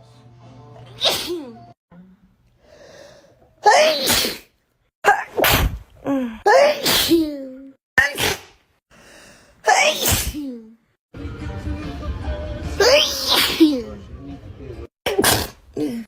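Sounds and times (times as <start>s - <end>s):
woman sneezing: 0.9s - 1.7s, 3.6s - 5.6s, 6.2s - 8.6s, 9.6s - 10.7s, 12.8s - 13.9s, 15.1s - 16.0s.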